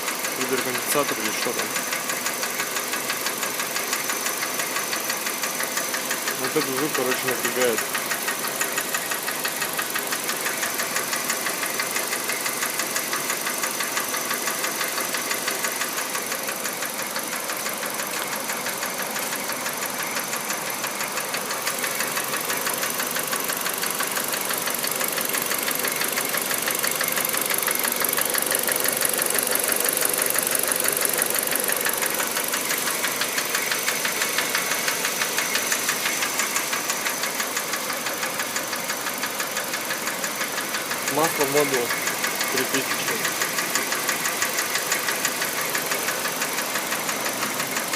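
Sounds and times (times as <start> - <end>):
car engine ticking knock: 0.0 - 47.9.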